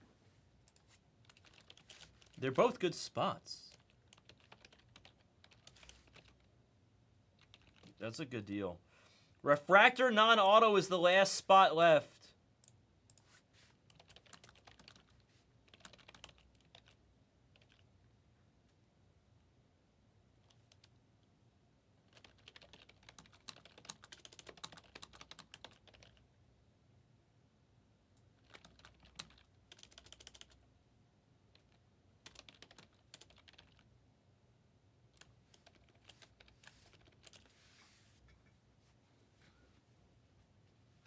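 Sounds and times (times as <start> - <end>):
faint keyboard typing: 0.6 - 6.6, 7.2 - 8.1, 12.6 - 18.0, 20.4 - 21.1, 22.0 - 26.4, 28.1 - 30.8, 31.4 - 34.0, 35.0 - 38.5.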